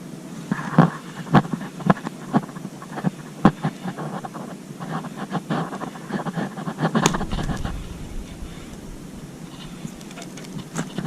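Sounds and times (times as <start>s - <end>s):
brief low rumble: 7.1s - 10.4s
light clicks and knocks: 9.5s - 11.0s.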